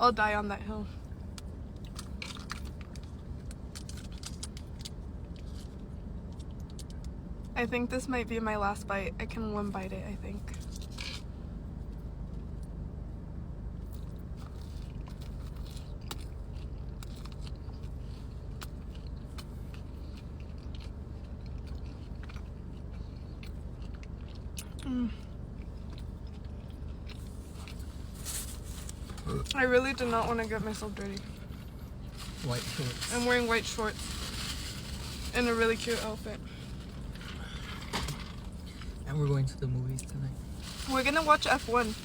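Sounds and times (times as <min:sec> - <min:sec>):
low steady hum: 0:00.0 - 0:42.0
person chewing: 0:13.9 - 0:28.1.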